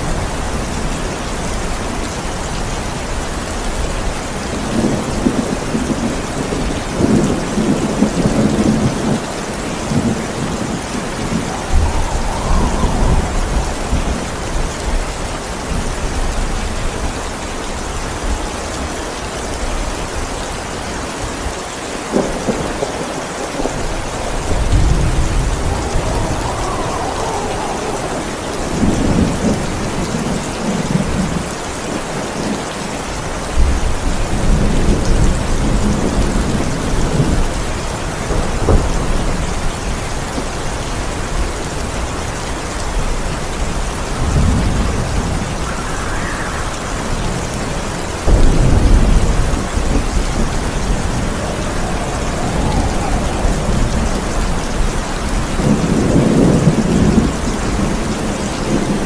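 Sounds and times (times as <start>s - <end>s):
thunder rumbling: 0.0s - 18.6s, 22.1s - 42.3s, 42.9s - 59.0s
heavy rain: 0.0s - 59.0s.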